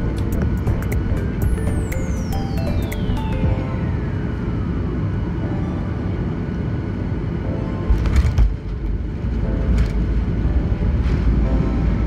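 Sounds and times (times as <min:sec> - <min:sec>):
electronic background music: 0:00.0 - 0:12.0
low rumble: 0:06.8 - 0:12.0.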